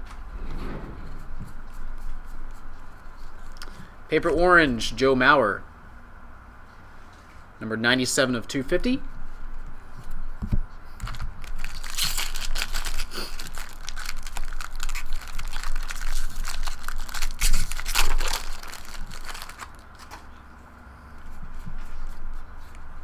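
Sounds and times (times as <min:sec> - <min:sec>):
foil wrapper crinkling and tearing: 0:11.0 - 0:20.3.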